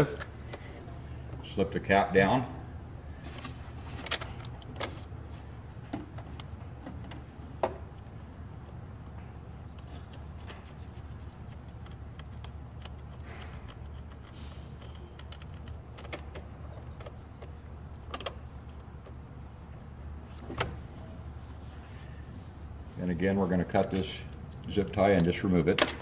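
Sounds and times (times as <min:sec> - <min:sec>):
steady low hum: 0:00.0 - 0:26.0
small metallic clicks and taps: 0:11.4 - 0:19.2.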